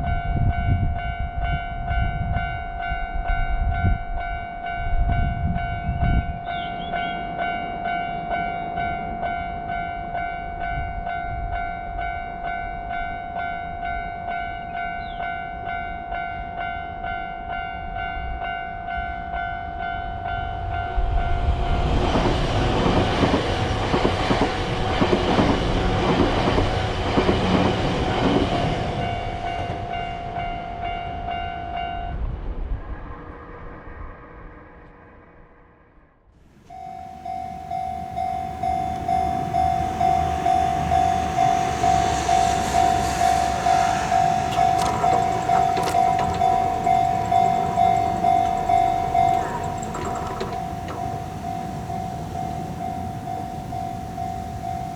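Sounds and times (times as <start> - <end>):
train wheels rattling over rail joints: 21.9 - 29.6, 37.5 - 53.0
level crossing warning bell clanging: 36.7 - 54.9.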